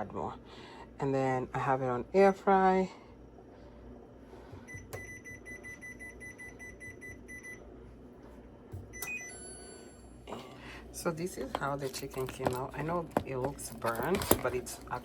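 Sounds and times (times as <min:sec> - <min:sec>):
air fryer beeping: 0:04.7 - 0:07.7, 0:08.8 - 0:10.2.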